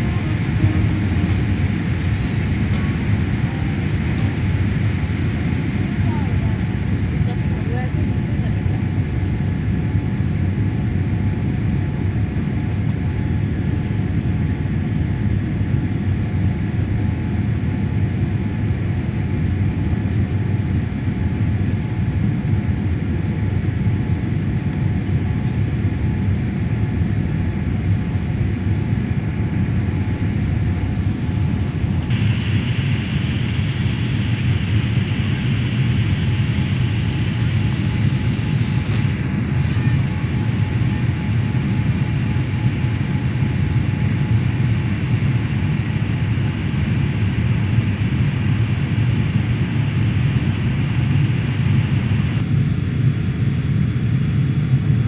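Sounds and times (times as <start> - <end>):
jet engine roar in cabin: 0.0 - 55.0.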